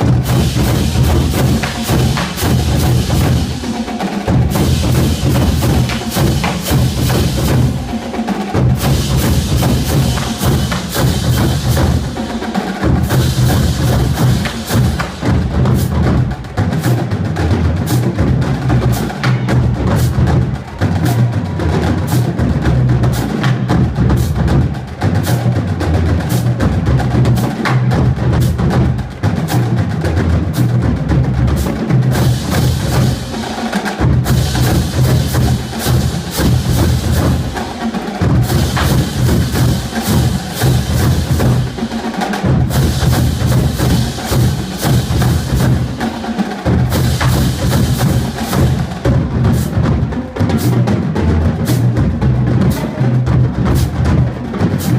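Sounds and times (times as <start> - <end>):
bass drum notes: 0.0 - 8.0, 8.6 - 12.2, 38.2 - 41.8, 46.7 - 54.9
marching drumline: 0.0 - 54.9.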